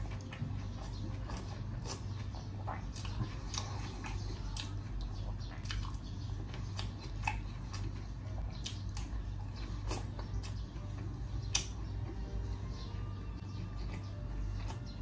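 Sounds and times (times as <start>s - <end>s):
person chewing food: 0.0s - 15.0s
steady low hum: 0.0s - 15.0s.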